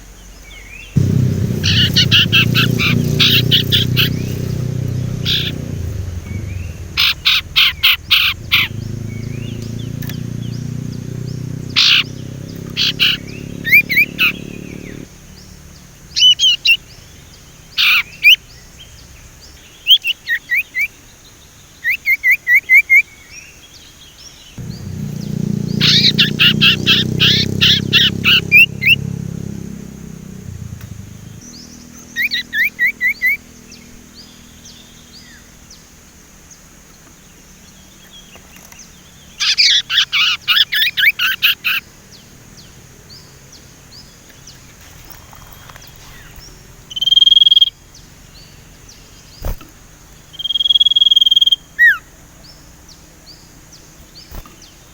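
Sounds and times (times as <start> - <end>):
songbird chattering: 0.0 - 21.0, 21.8 - 35.8, 37.2 - 54.9
held bird whistle: 1.0 - 10.2, 11.7 - 15.0, 24.6 - 29.0, 46.0 - 47.8, 50.3 - 52.0
low rumble: 1.0 - 11.2, 29.6 - 31.5.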